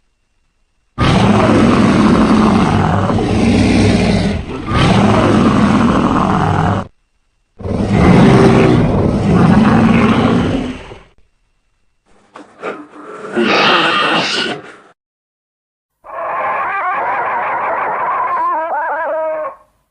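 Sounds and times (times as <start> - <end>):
monster roaring: 1.0 - 6.9, 7.6 - 11.2, 13.2 - 14.6, 16.1 - 19.6.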